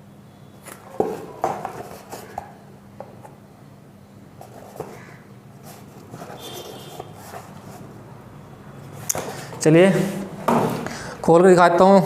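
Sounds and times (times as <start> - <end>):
faint steady hum: 0.0 - 12.0
cardboard box knocks and rustles: 10.4 - 10.8.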